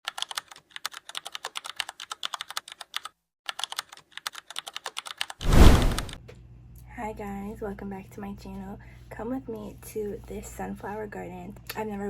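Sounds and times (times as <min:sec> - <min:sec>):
loud rush of noise: 0:05.4 - 0:06.2.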